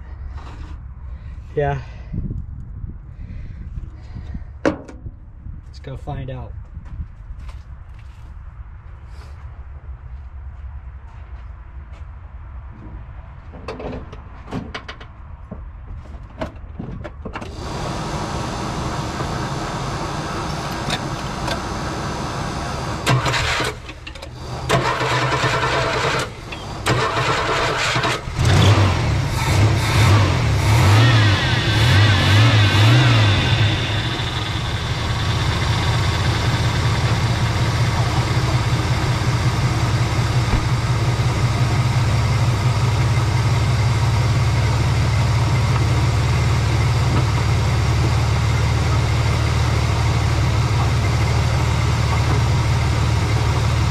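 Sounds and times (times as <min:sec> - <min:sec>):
car engine cranking and idling: 0:17.3 - 0:53.9.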